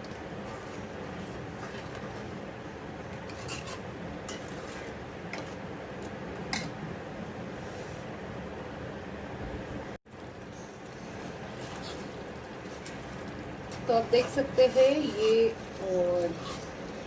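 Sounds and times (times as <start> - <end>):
metal spoon scraping a pan: 3.1 - 5.6, 14.0 - 17.0.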